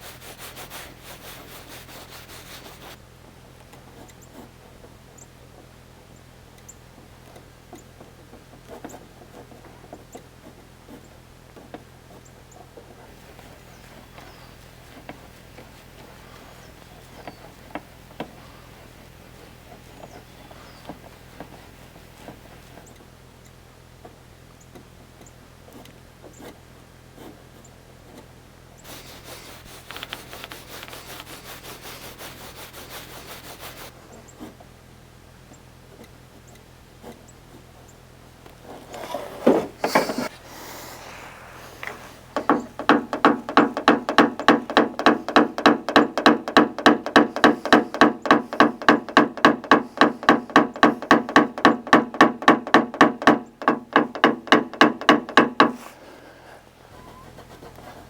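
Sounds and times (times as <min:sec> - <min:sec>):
rubbing strokes on a panel: 0:00.0 - 0:03.0, 0:07.8 - 0:23.0, 0:27.2 - 0:34.7, 0:38.6 - 0:58.0.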